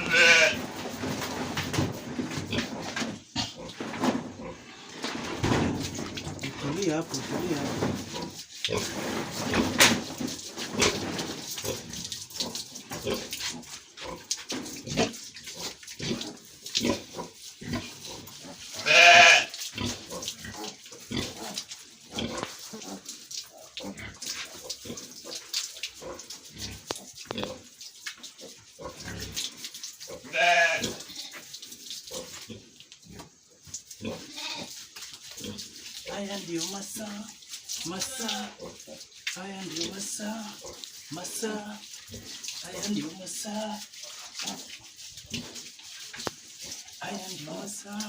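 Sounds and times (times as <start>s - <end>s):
pig squealing: 0.0s - 0.6s, 18.6s - 21.6s, 30.1s - 31.4s
scrubbing and splashing: 0.0s - 48.0s.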